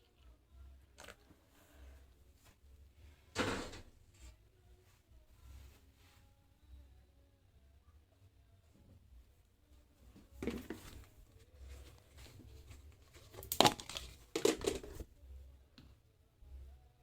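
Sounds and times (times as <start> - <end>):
crinkling and handling noises: 10.0 - 15.1.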